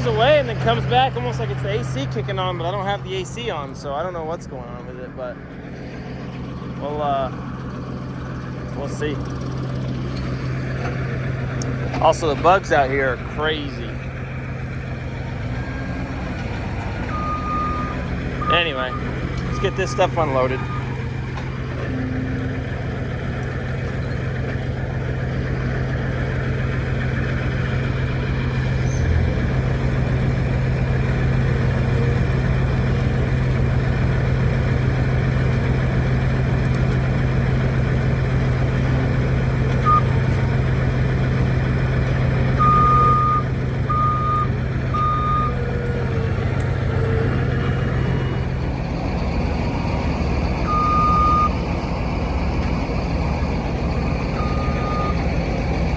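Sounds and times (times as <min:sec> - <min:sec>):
heavy engine running: 0:00.0 - 0:55.9
reversing alarm beeping: 0:15.3 - 0:23.1, 0:39.8 - 0:55.7.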